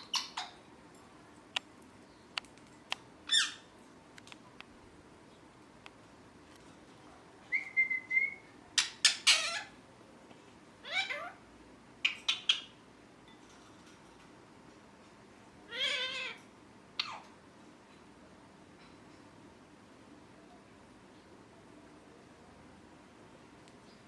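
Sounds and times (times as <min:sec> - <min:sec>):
parrot calling: 0:00.0 - 0:00.7, 0:03.3 - 0:03.7, 0:07.5 - 0:09.8, 0:10.8 - 0:11.4, 0:12.0 - 0:12.8, 0:15.7 - 0:16.4, 0:17.0 - 0:17.4.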